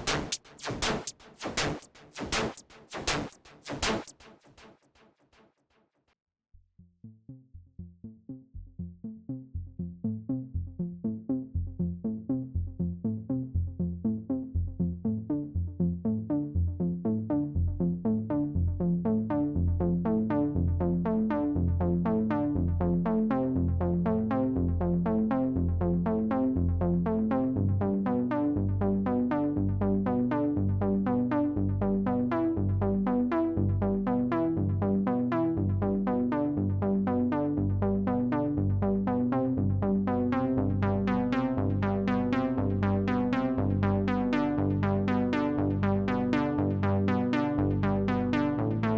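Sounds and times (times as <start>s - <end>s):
synthesizer sequenced pattern: 0.0s - 4.1s, 40.1s - 48.9s
deep synth bass line: 7.3s - 48.9s.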